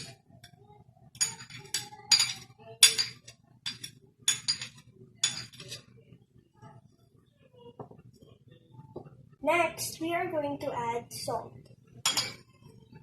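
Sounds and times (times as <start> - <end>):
spoon clinking against bowl: 12.0 - 12.5.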